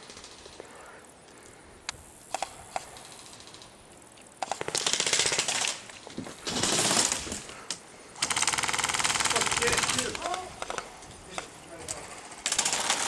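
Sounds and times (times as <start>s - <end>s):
airsoft guns firing: 4.4s - 7.5s, 8.2s - 13.0s.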